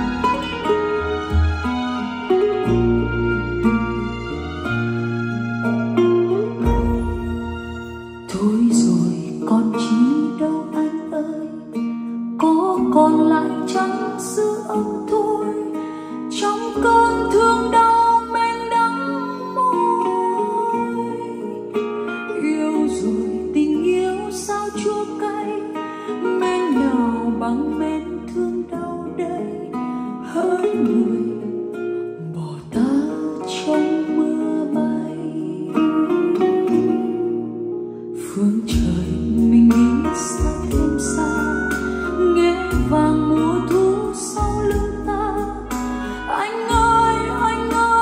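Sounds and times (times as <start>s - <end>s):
deep bass notes: 0.0s - 8.3s
slow song with acoustic guitar: 0.0s - 48.0s
ballad with singing: 6.0s - 37.4s, 38.1s - 48.0s.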